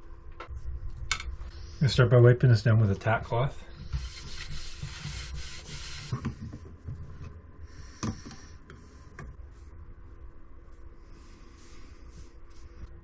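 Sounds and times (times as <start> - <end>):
cloth rubbing over wooden board: 3.9 - 6.2.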